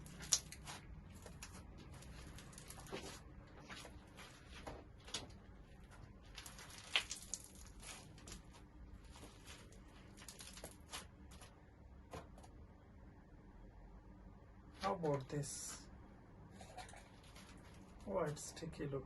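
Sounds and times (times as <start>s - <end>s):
slime crackling and popping: 0.0s - 3.2s, 6.2s - 11.1s.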